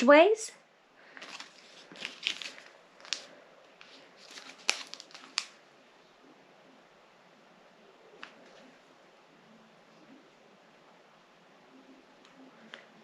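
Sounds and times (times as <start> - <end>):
packets crinkling and rustling: 1.0 - 5.6.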